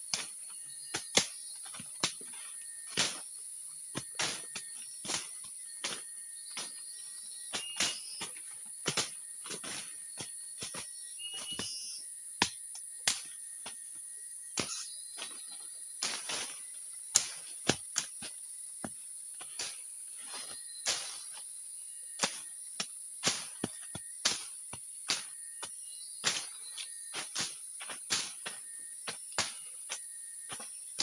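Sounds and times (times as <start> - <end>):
crickets and insects chirping: 0.0 - 31.0.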